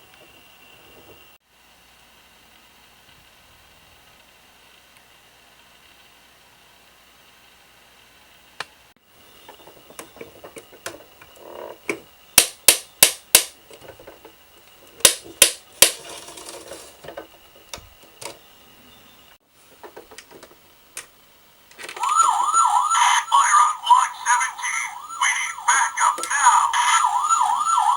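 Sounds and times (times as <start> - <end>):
toy fire engine clicks: 21.7 - 27.9
electronic toy siren wailing: 21.8 - 27.9.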